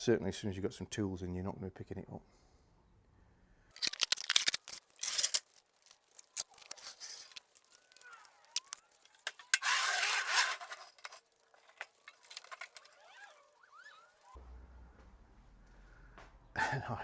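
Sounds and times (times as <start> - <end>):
scraping rustling noise: 3.8 - 14.4.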